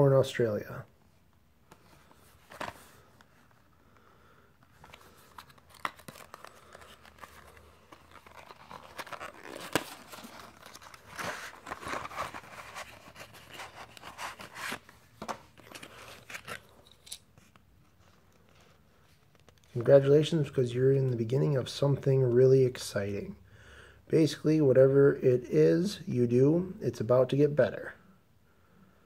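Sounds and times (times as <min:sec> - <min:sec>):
packaging rustling and tearing: 0:04.7 - 0:17.2.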